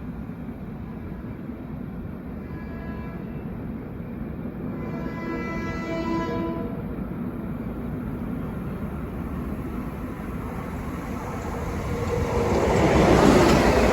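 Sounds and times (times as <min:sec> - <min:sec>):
locomotive air horn: 0:02.4 - 0:03.6, 0:04.7 - 0:06.9
locomotive engine rumble: 0:06.8 - 0:13.9.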